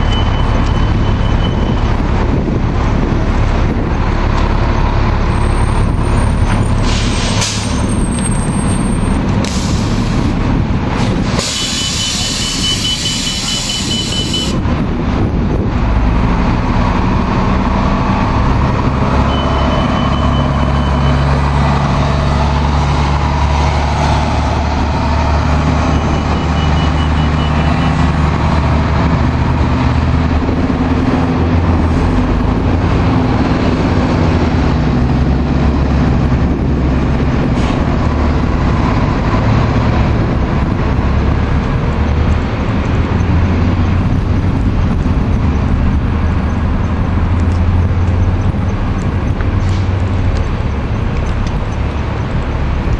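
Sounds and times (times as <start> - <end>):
high beeping: 0.0 - 2.0, 11.6 - 14.6, 19.1 - 21.5, 25.8 - 28.1
diesel bus engine running: 0.0 - 52.9
air brake hiss: 6.8 - 7.8, 9.4 - 10.2, 11.3 - 14.5.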